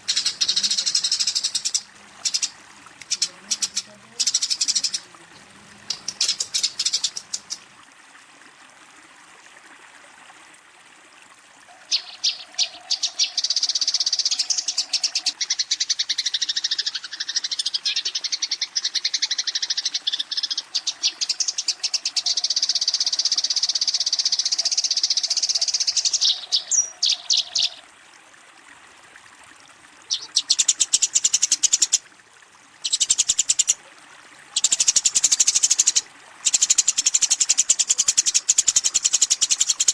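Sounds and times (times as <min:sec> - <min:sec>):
sparrow chattering chirps: 0:03.1 - 0:05.0, 0:05.9 - 0:07.6, 0:30.1 - 0:32.0.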